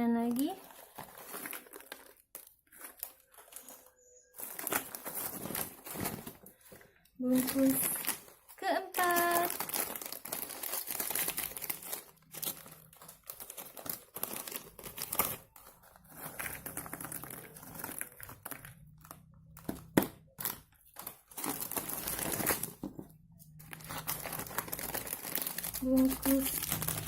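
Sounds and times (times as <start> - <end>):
plastic snack packet crinkling: 0.1 - 27.0.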